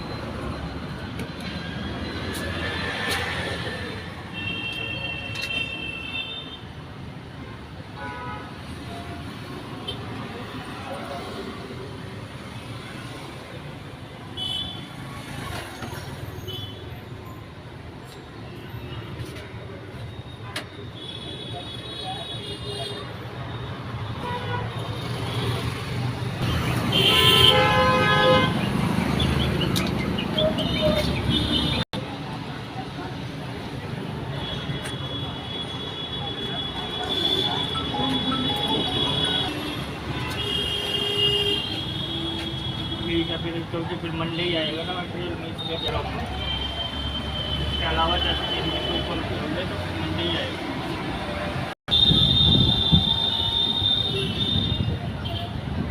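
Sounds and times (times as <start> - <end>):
road traffic: 0.0 - 55.9
high car horn: 26.9 - 28.6.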